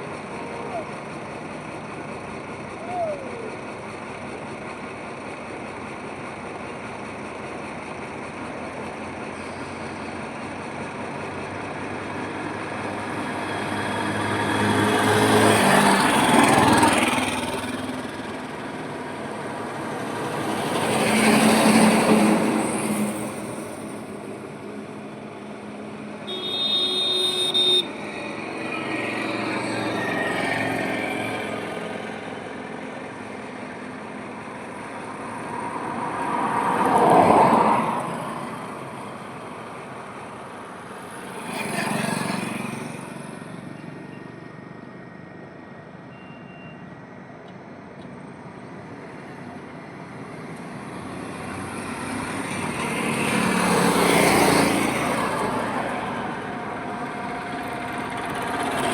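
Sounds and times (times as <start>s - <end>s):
highway traffic passing: 0.0s - 58.9s
car horn: 26.2s - 28.0s.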